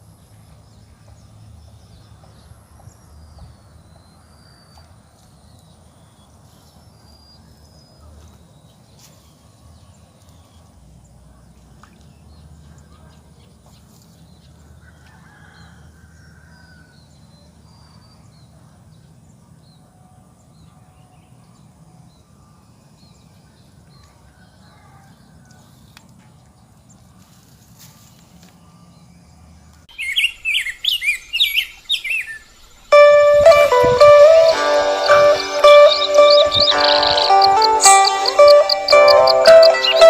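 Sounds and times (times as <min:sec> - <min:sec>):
birds chirping: 0:28.6 - 0:40.0
faint high-pitched tone: 0:32.9 - 0:40.0.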